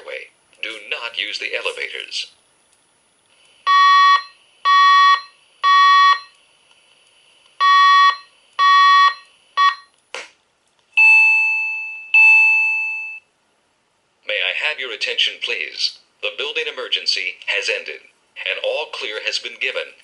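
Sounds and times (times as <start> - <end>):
fire alarm buzzy tones: 3.7 - 6.4, 7.6 - 9.9, 11.0 - 13.3
ringing tones: 11.0 - 13.2.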